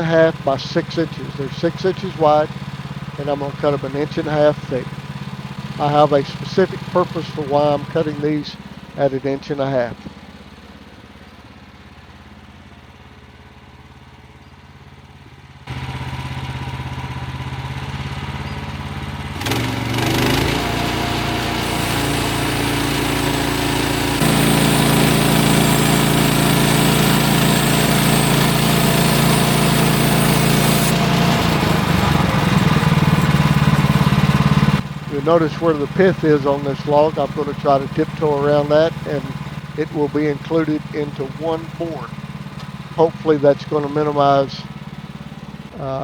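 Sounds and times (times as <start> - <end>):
sawmill gas engine running: 0.0 - 46.0
band blade cutting log hiss: 21.5 - 31.2.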